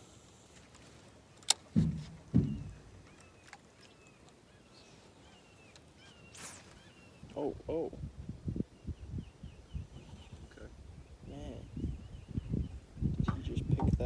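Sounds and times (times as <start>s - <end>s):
faint birds chirping: 0.0s - 14.0s
dull thumps in a boat: 1.6s - 3.2s, 13.2s - 14.0s.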